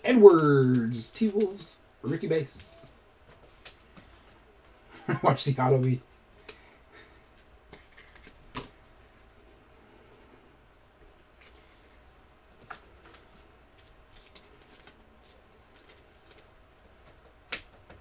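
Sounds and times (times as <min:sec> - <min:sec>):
trading cards rustling: 0:00.1 - 0:04.4, 0:12.6 - 0:18.0.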